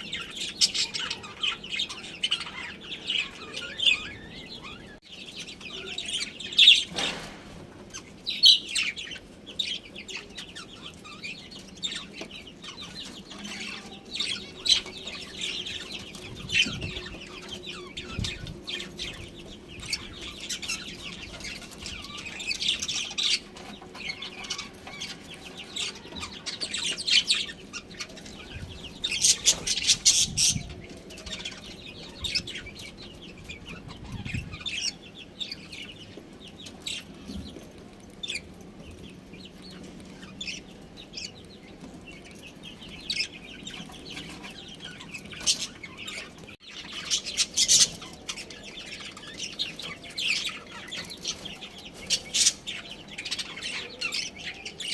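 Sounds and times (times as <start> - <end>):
budgerigars chirping: 0.0 - 37.6, 38.2 - 54.9.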